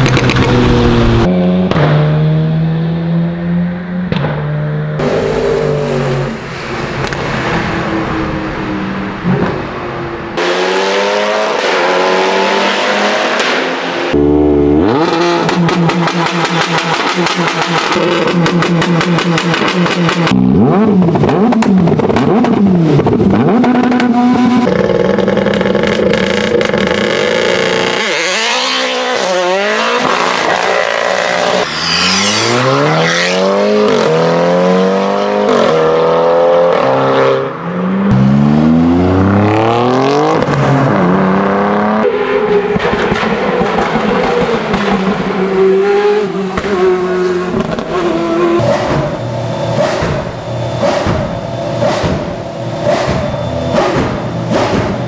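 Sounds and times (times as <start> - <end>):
exhaust pops and crackles: 0.0 - 0.8, 24.7 - 27.4, 42.7 - 45.3
race car engines revving: 0.0 - 55.0.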